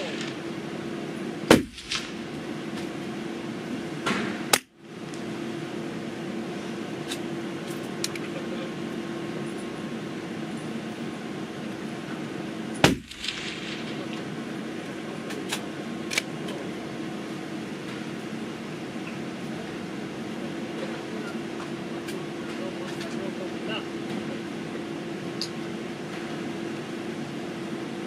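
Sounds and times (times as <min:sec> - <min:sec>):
steady background hum: 0:00.0 - 0:28.0
rifle shots with echo: 0:01.5 - 0:02.7, 0:12.8 - 0:14.8.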